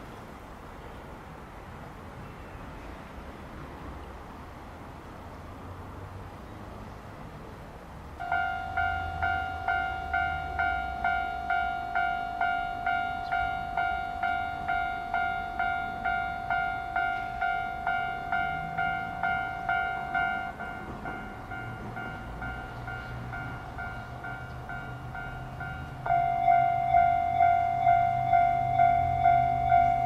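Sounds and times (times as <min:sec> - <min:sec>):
railroad crossing warning bell: 0:08.2 - 0:30.0.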